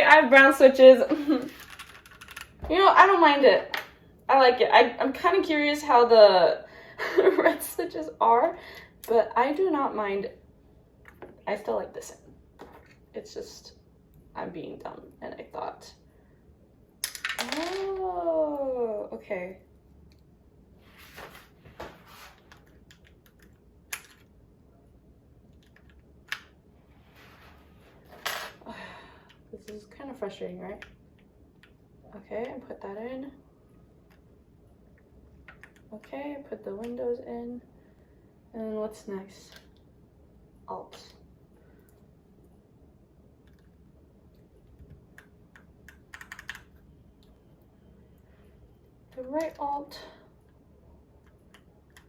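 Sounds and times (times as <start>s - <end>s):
mechanical keyboard clicking: 46.1s - 46.7s.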